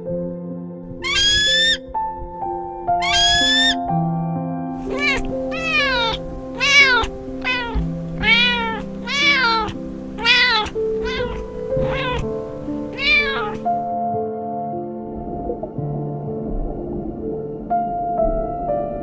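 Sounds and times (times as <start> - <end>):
soft background music: 0.0 - 19.0
cat meowing: 1.0 - 1.8, 3.0 - 3.8, 4.9 - 12.3, 12.9 - 13.7.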